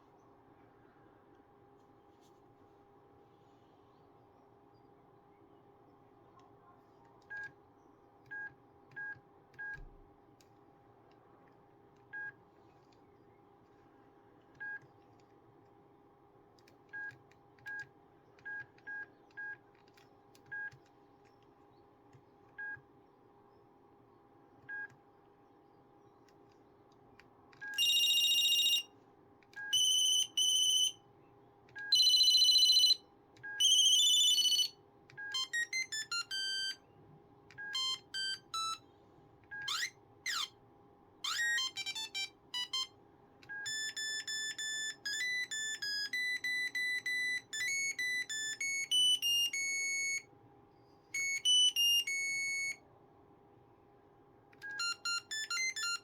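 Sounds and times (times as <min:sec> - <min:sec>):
faint steady hum: 0:00.0 - 0:56.0
mobile phone ringtones: 0:27.7 - 0:28.9, 0:29.7 - 0:31.0, 0:31.9 - 0:33.0, 0:33.6 - 0:36.8, 0:37.7 - 0:38.8, 0:39.6 - 0:40.5, 0:41.3 - 0:42.9, 0:43.6 - 0:50.2, 0:51.2 - 0:52.8, 0:54.7 - 0:56.0.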